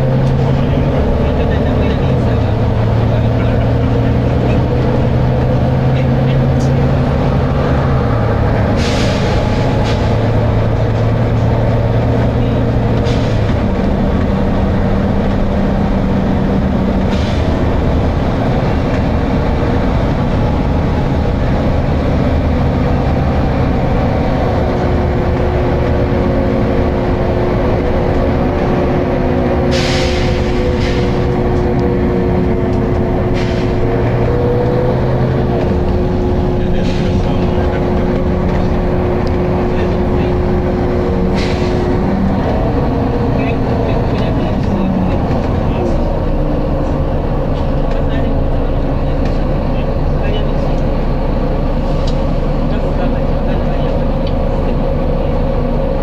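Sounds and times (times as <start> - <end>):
bus diesel engine under load: 0.0 - 56.0
pneumatic air hisses: 29.7 - 31.2.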